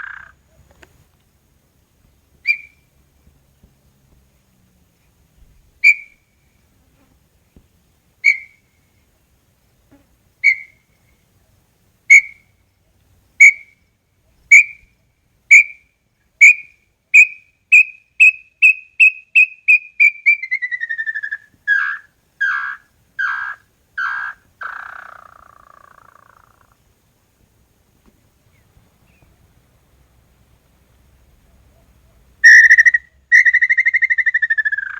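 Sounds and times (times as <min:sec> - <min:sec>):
bird whistled song: 0:02.4 - 0:02.8, 0:05.8 - 0:06.2, 0:08.2 - 0:08.6, 0:10.4 - 0:10.8, 0:12.1 - 0:12.4, 0:14.5 - 0:14.9, 0:15.5 - 0:15.8, 0:16.4 - 0:26.1, 0:32.4 - 0:34.9.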